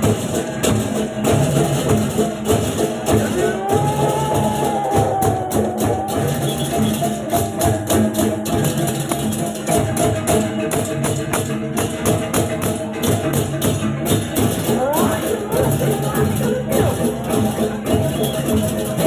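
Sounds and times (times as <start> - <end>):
cymbals clashing rapidly: 0.0 - 19.0
drums: 0.0 - 19.0.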